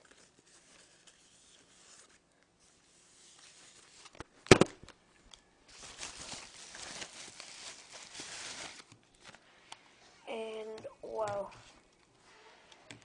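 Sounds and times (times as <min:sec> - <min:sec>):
plastic packaging rustling: 0:05.7 - 0:09.4.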